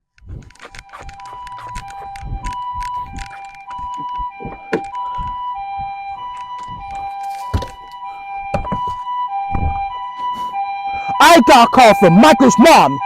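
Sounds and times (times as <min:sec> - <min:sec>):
two-tone emergency siren: 0:00.0 - 0:13.0
knocks and thumps: 0:00.2 - 0:07.8, 0:08.5 - 0:09.9.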